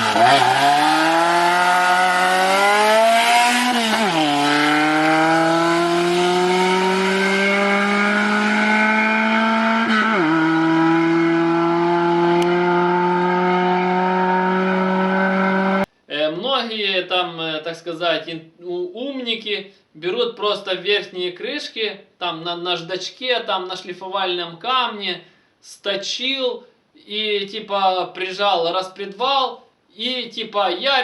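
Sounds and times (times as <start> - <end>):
car engine accelerating: 0.0 - 15.9.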